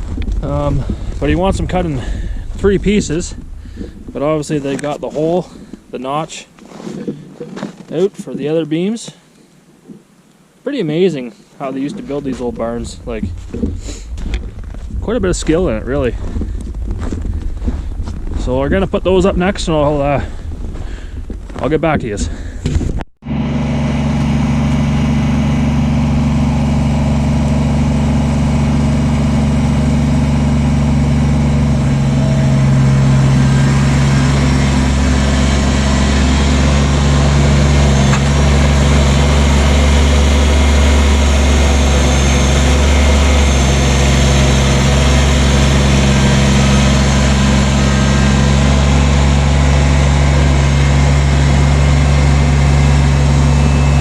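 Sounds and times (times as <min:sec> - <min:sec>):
tractor engine running: 0:00.0 - 0:08.3, 0:11.6 - 0:54.0.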